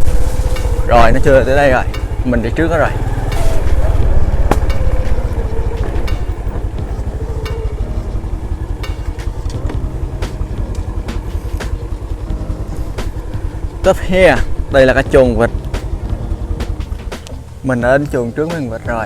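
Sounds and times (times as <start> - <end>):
motorbike engine running: 0.0 - 19.0
light ticks: 17.0 - 17.4.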